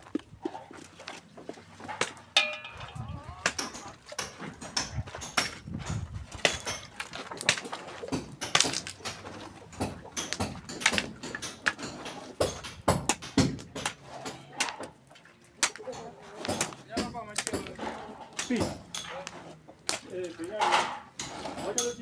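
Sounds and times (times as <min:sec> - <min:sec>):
sharp knocks and clicks: 0:02.4 - 0:14.0.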